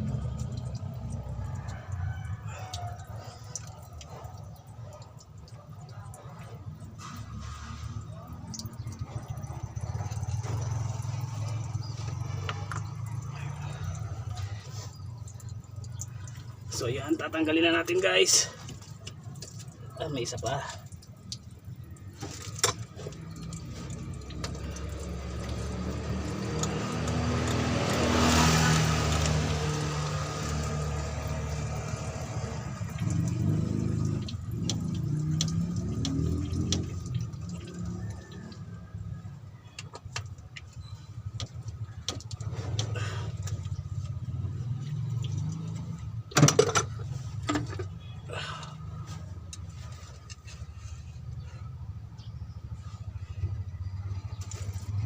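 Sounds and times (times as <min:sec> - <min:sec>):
vehicle engine humming: 0:00.0 - 0:55.0.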